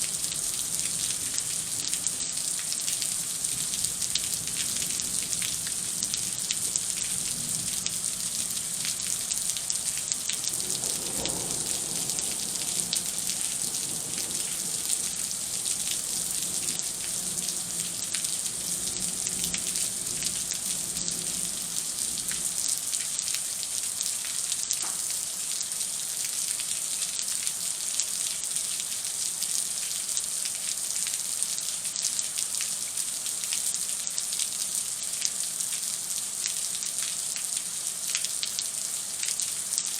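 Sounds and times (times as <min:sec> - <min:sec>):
heavy rain falling: 0:00.0 - 0:27.5.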